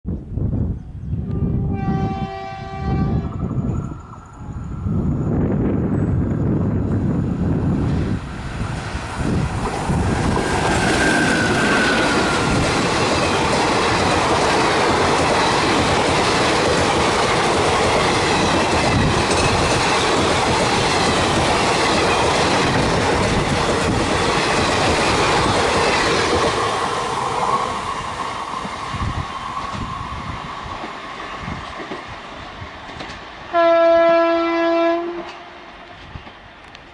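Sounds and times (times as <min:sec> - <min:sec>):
train horn blast: 0:01.3 - 0:03.4, 0:33.5 - 0:35.6
train wheels clattering on track: 0:07.8 - 0:33.4.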